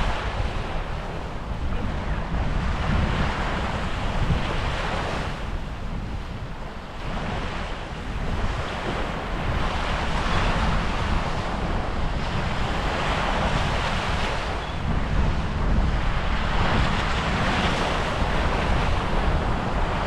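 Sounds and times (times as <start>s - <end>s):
surf breaking on beach: 0.0s - 20.0s
wind buffeting microphone: 0.0s - 20.0s.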